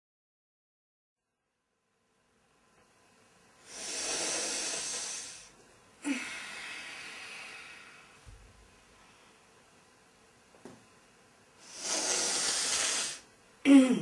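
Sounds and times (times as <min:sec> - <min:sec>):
person breathing deeply: 0:03.6 - 0:08.2, 0:11.6 - 0:14.0.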